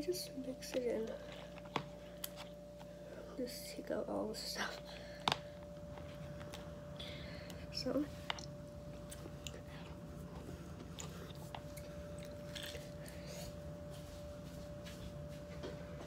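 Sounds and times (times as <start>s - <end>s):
low electrical hum: 0.0s - 16.0s.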